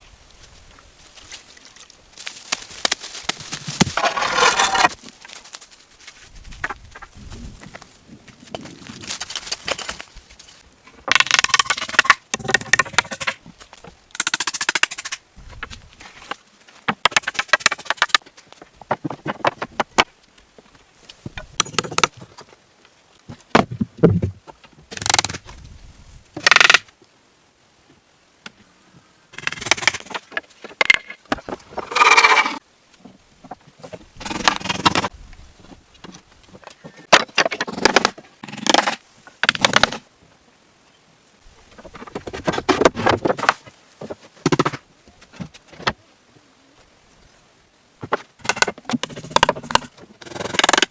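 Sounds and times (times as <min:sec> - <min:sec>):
scraping wood: 0:03.8 - 0:05.0.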